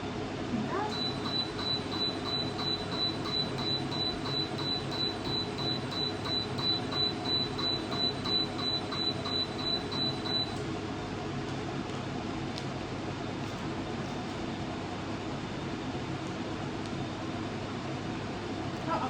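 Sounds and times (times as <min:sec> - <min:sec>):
machine humming: 0:00.6 - 0:10.7
short high machine beeps: 0:00.9 - 0:10.6.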